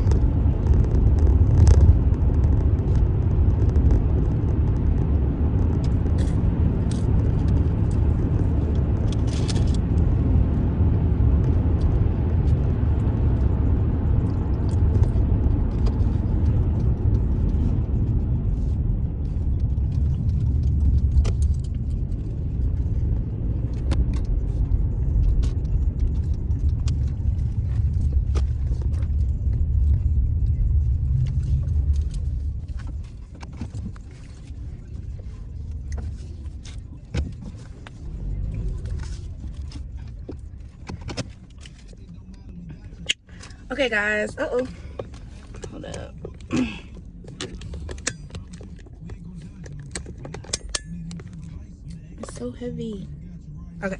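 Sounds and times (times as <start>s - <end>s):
small clicks and rattles: 0.0s - 10.0s
car cabin road rumble: 0.0s - 53.9s.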